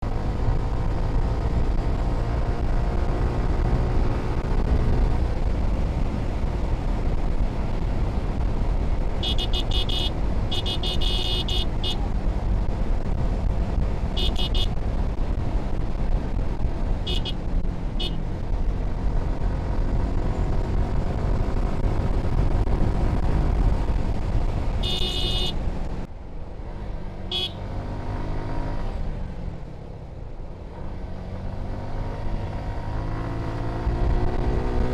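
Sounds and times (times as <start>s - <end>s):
motorcycle engine revving: 0.1s - 8.4s, 27.0s - 29.3s, 30.9s - 34.9s
vehicle horns beeping: 9.2s - 12.0s, 14.2s - 14.8s, 17.0s - 17.4s, 18.0s - 18.2s, 24.8s - 25.6s, 27.3s - 27.6s.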